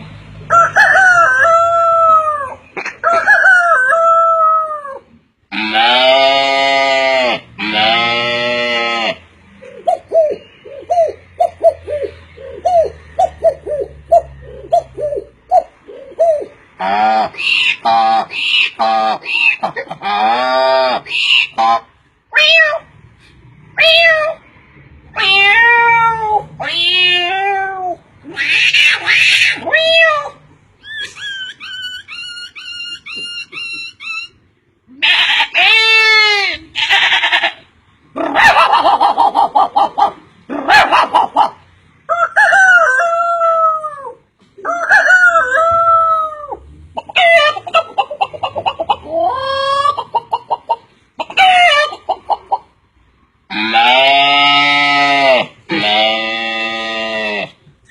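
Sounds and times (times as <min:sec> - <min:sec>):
man imitating animal calls: 0:03.9 - 0:22.9, 0:42.9 - 0:50.2, 0:53.5 - 0:57.9.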